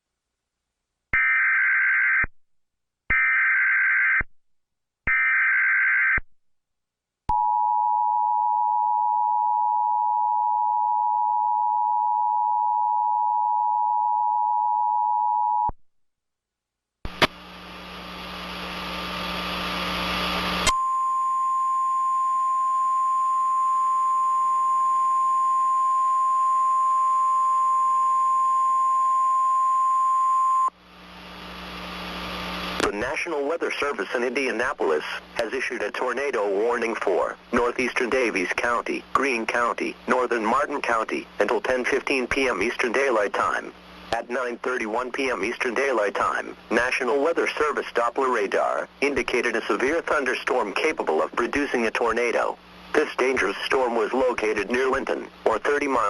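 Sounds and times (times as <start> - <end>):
radio static hiss: 17.1 - 20.7, 30.9 - 56.0.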